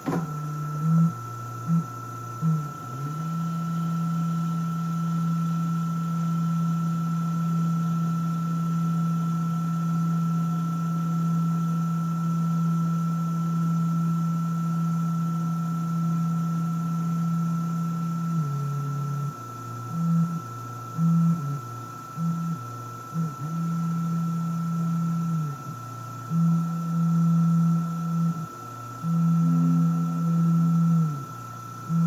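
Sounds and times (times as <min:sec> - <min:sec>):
cnc machine motor humming: 0:00.0 - 0:32.0
thin high whine: 0:22.2 - 0:32.0.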